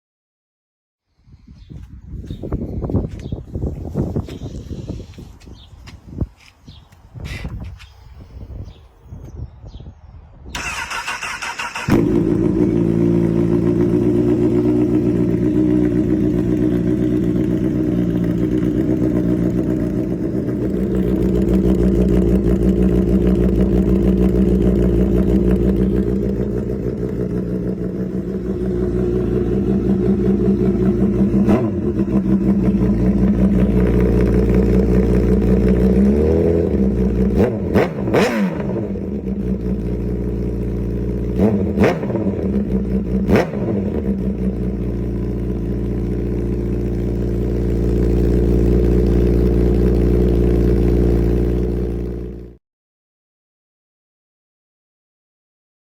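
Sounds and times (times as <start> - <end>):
motorcycle engine starter cranking: 10.6 - 12.5
motorcycle engine idling: 10.6 - 52.6.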